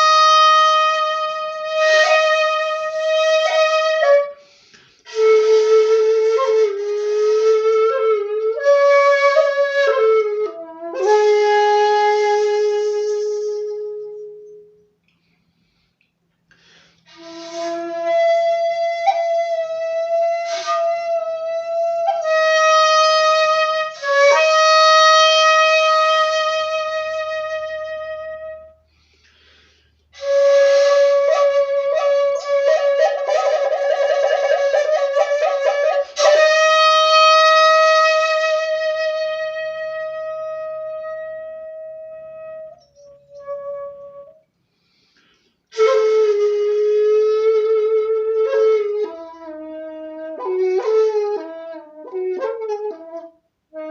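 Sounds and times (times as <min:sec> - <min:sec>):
end-blown bamboo flute: 0:30.2 - 0:44.4.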